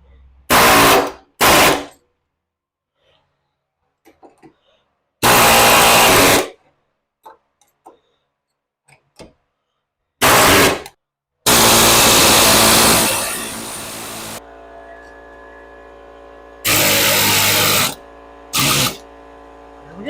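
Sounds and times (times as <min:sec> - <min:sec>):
power tool running: 0:00.5 - 0:01.8, 0:05.2 - 0:06.5, 0:10.2 - 0:10.9, 0:11.5 - 0:20.0.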